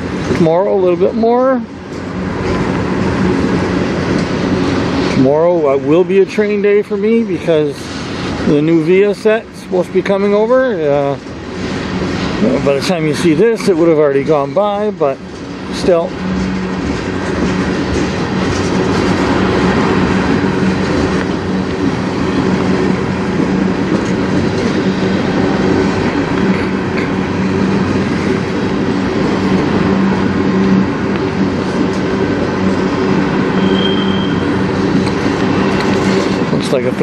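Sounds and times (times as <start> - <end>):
freight train wheels rumbling: 0.0 - 37.0
high squeal: 33.5 - 34.6.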